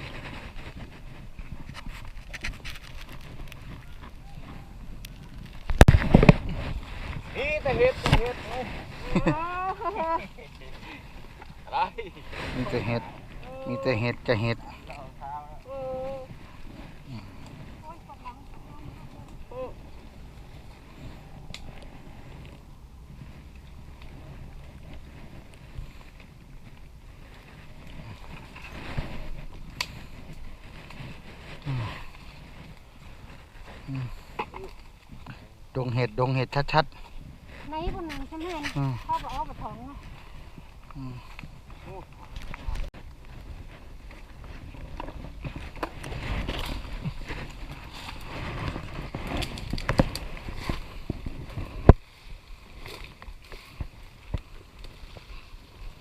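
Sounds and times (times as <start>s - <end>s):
wind on microphone: 0.0s - 35.7s, 36.4s - 56.0s
leaf litter rustling underfoot: 2.5s - 14.8s.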